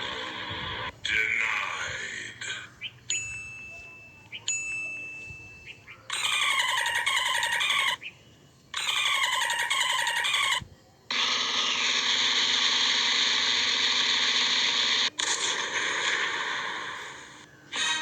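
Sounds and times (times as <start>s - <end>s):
wavering pulsing call: 5.7s - 8.1s.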